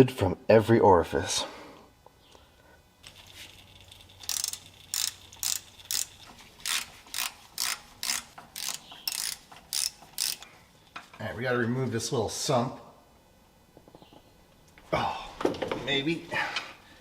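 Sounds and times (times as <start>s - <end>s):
ratchet wrench clicking: 3.1s - 10.5s.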